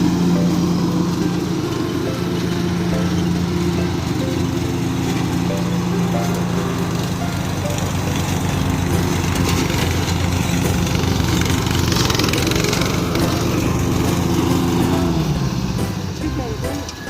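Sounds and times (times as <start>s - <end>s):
small engine running: 0.0s - 17.0s.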